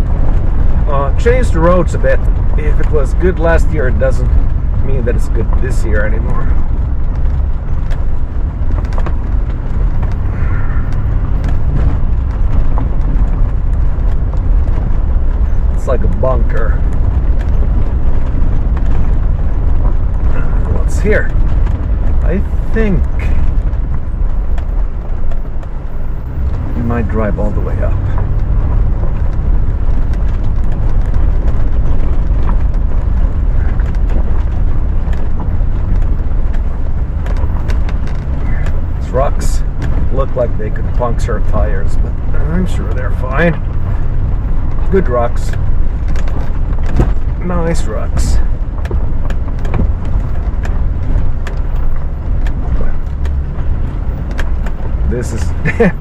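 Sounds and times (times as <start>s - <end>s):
vehicle engine and tyres rumbling: 0.0s - 56.0s
small knocks and rattles: 23.2s - 47.5s, 48.2s - 55.1s
faint clicks and knocks: 48.1s - 56.0s.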